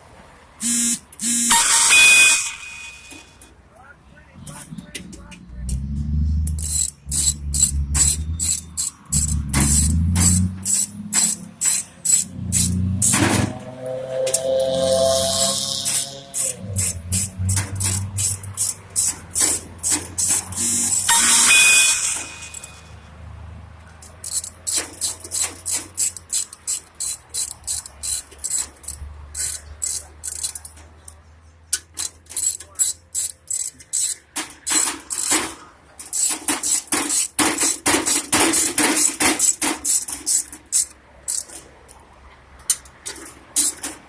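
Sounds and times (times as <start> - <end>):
hammer striking sheet metal: 9.1 - 23.0.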